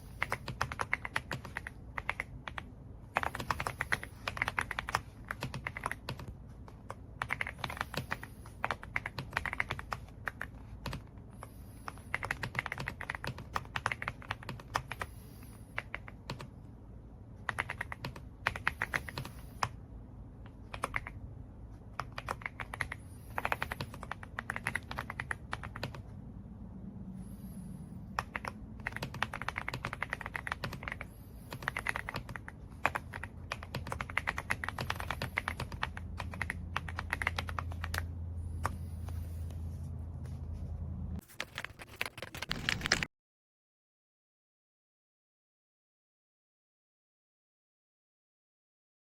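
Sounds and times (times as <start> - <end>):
mechanical keyboard typing: 0.1 - 11.1, 11.9 - 15.1, 17.4 - 19.8, 20.5 - 21.2, 21.9 - 26.1, 28.2 - 38.8, 41.2 - 43.1.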